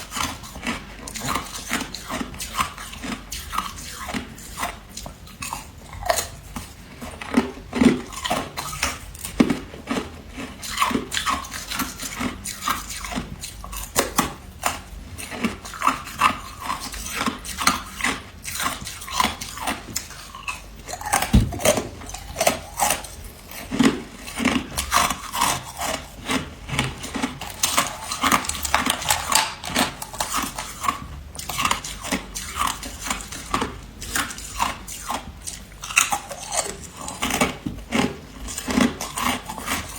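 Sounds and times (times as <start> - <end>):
person chewing ice: 0.0 - 39.9.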